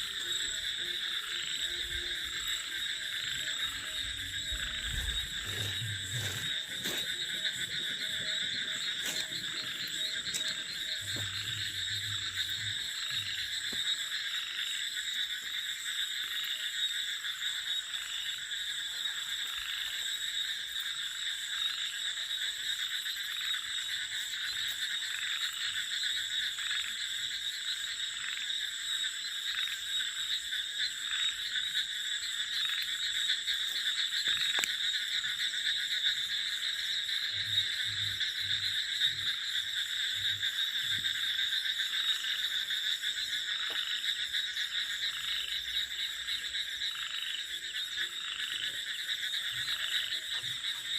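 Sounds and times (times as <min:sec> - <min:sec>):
frogs calling: 0:00.0 - 0:50.9
low pulsing throb: 0:03.1 - 0:12.9.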